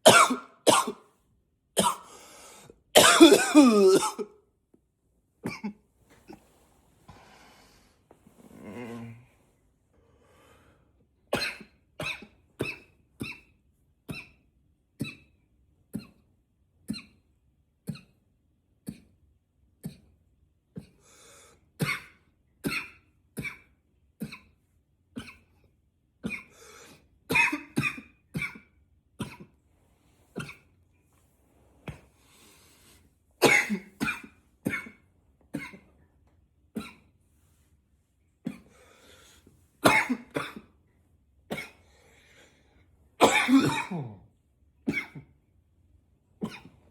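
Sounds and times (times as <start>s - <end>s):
man coughing: 0.0s - 1.0s, 1.8s - 2.0s, 3.0s - 4.3s, 33.4s - 35.0s, 39.8s - 40.7s, 43.2s - 44.2s.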